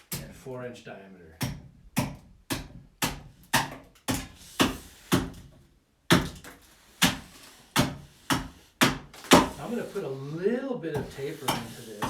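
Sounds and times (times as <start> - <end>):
axe chopping wood: 1.4 - 5.5, 6.1 - 7.2.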